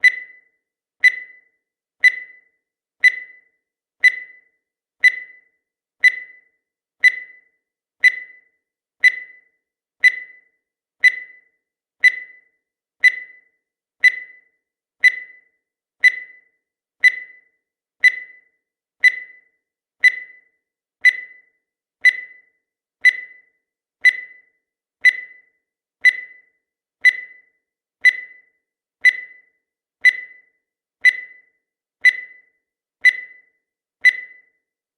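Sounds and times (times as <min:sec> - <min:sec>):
short high-pitched timer blips: 0:00.0 - 0:34.6.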